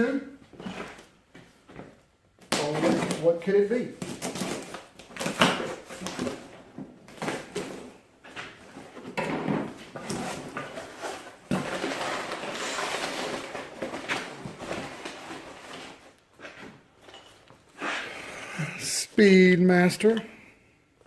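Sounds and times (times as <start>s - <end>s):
packing rustling: 9.7s - 17.8s.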